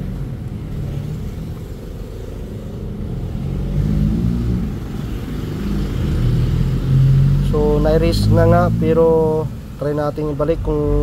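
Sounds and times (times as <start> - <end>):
vehicle engine rumbling: 0.0 - 11.0.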